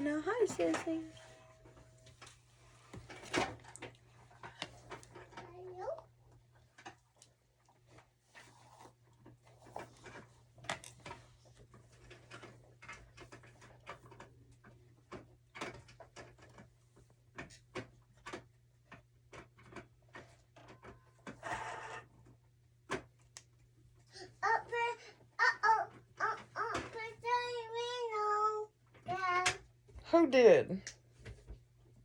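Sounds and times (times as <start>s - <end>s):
clicks taps and rustles: 0.0s - 23.9s.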